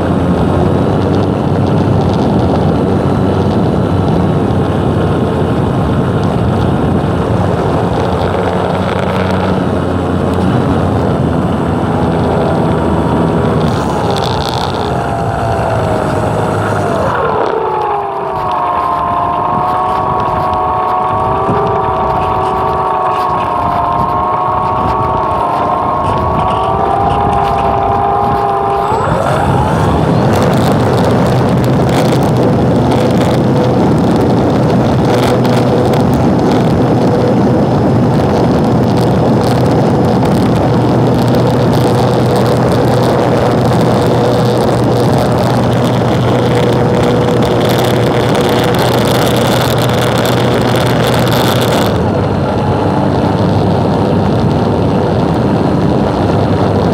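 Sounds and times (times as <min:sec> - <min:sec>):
propeller aircraft engine: 0:00.0 - 0:56.9
wind rush: 0:00.0 - 0:56.9.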